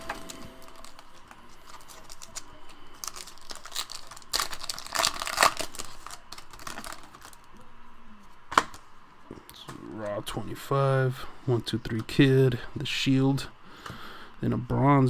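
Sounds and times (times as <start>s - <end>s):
packaging crinkling: 0.0s - 7.5s.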